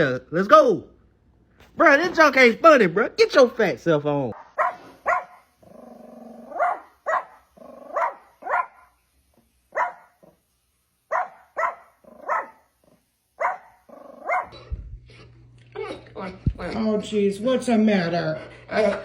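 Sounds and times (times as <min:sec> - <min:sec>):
dog barking: 0:04.4 - 0:05.5, 0:06.4 - 0:09.0, 0:09.7 - 0:10.4, 0:11.1 - 0:12.7, 0:13.4 - 0:14.6.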